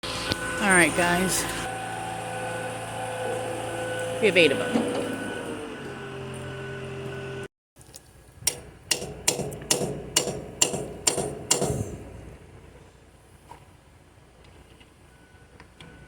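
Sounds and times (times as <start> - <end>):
hammer blows ringing: 8.9 - 11.9.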